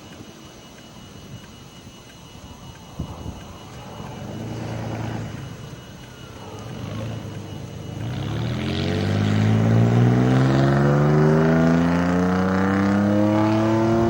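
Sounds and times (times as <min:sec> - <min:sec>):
car engine accelerating: 0:03.9 - 0:14.0.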